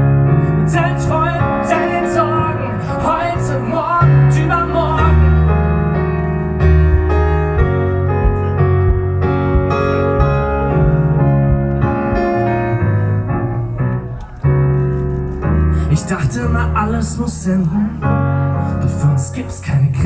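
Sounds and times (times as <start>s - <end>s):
bass line: 0.0s - 19.4s
keyboard chords: 0.0s - 20.0s
live band playing: 4.2s - 17.2s.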